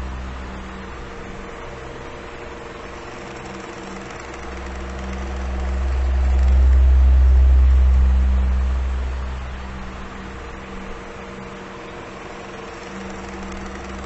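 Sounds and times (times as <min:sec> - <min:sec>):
electric fan running: 0:00.0 - 0:14.0.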